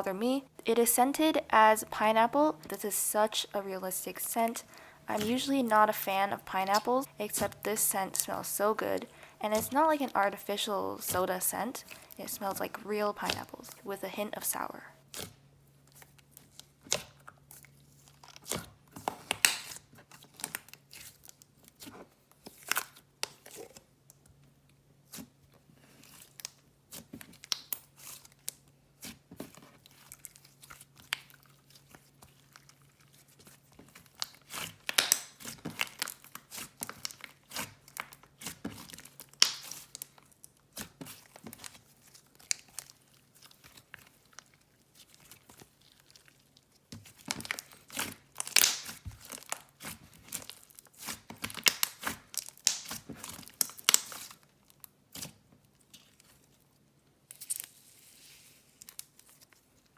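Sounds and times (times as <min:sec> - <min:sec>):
slime crackling clicks and pops: 0:27.4 - 0:27.8, 0:34.2 - 0:36.2, 0:39.3 - 0:40.0, 0:47.4 - 0:49.6, 0:51.4 - 0:54.3.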